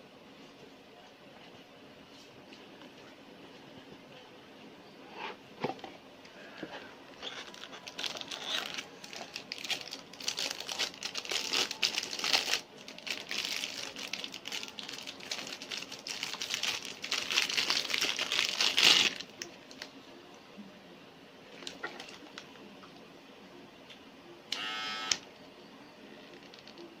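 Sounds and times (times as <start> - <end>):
plastic packaging crinkling: 7.2 - 19.9.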